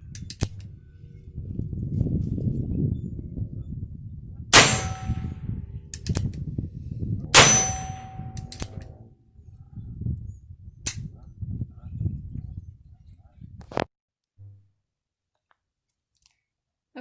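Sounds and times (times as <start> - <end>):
metallic ring: 4.6 - 5.4, 7.3 - 8.8.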